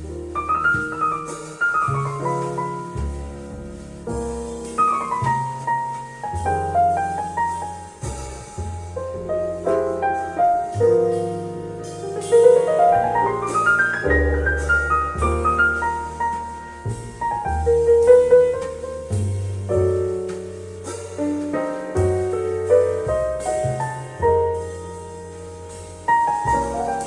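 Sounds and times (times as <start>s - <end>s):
jazz piano: 0.0s - 27.0s
low bass notes: 0.0s - 27.0s.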